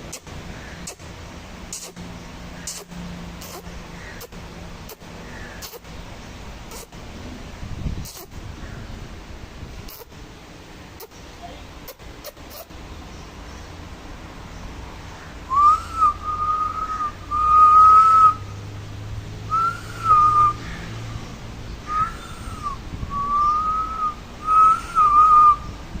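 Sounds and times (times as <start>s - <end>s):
person whistling: 15.5s - 18.4s, 21.9s - 25.6s.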